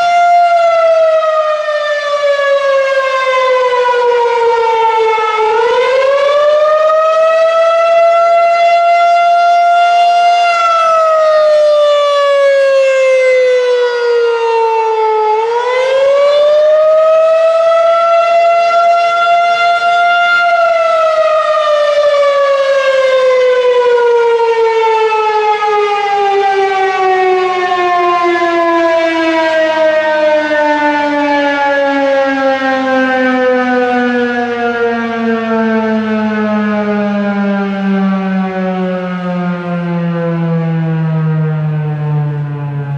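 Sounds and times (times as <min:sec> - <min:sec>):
electromechanical siren wailing: 0:00.0 - 0:42.9.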